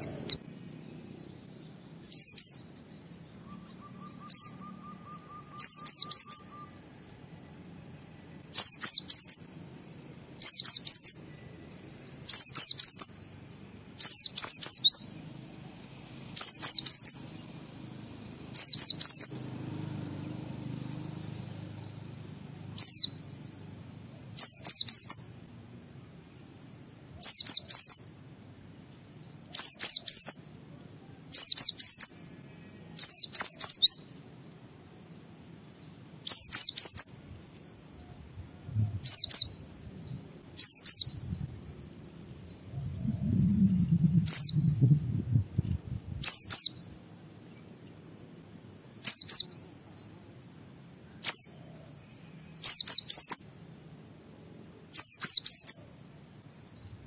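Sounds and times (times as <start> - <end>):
faint low hum: 0.0 - 24.4, 37.1 - 52.6
bird singing rapid high chirps: 0.0 - 25.7, 26.4 - 28.3, 29.0 - 30.6, 31.2 - 50.6, 51.2 - 53.6, 54.9 - 57.0.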